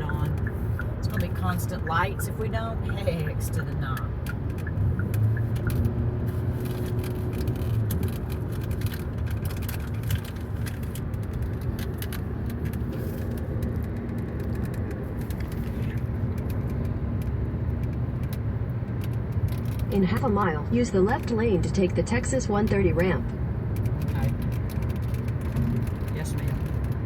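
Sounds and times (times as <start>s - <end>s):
car cabin road and engine rumble: 0.0s - 27.0s.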